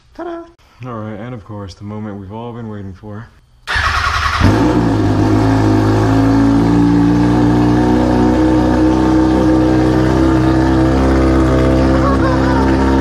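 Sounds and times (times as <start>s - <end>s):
motorcycle engine idling loudly: 4.4s - 13.0s.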